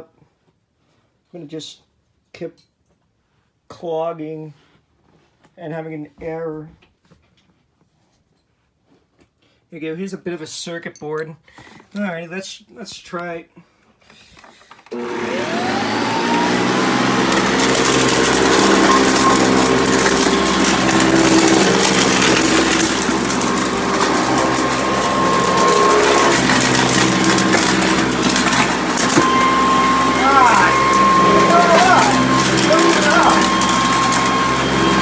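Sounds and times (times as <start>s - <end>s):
vacuum cleaner motor whining: 14.9s - 35.0s
debris clicking and rattling: 16.1s - 35.0s.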